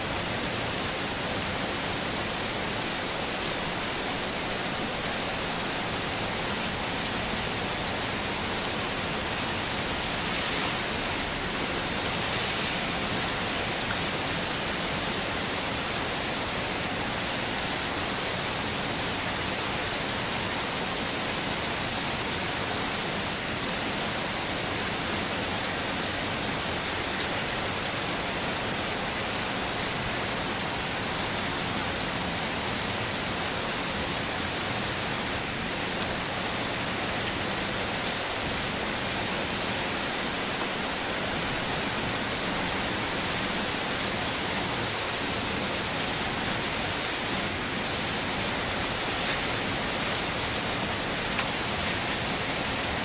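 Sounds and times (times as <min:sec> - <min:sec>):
heavy rain falling: 0:00.0 - 0:53.0.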